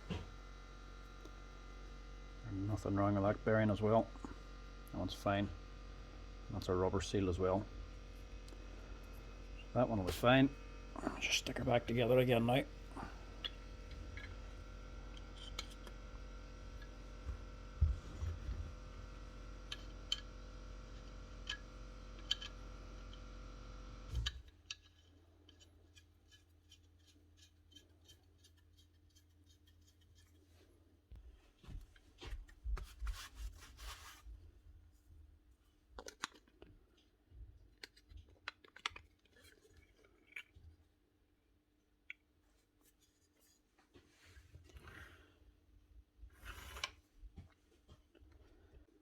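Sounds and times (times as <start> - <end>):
steady background hum: 0.0 - 28.9
clicks and knocks of parts: 21.4 - 22.6, 24.1 - 30.3, 36.0 - 37.1, 37.7 - 40.7.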